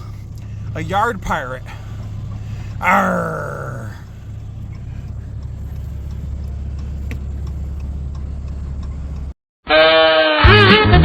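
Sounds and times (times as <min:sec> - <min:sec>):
vehicle engine rumbling: 0:00.0 - 0:09.3
faint ticks: 0:04.6 - 0:09.3.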